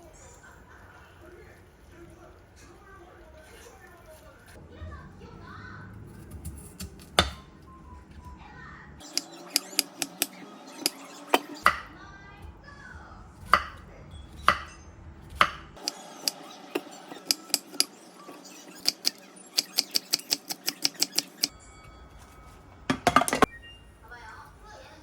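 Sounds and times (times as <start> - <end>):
knife chopping on cutting board: 6.2 - 7.5, 11.4 - 11.9, 13.5 - 13.8, 14.4 - 14.8, 15.4 - 17.9
utensils and dishes clinking: 9.0 - 11.9, 13.5 - 23.7.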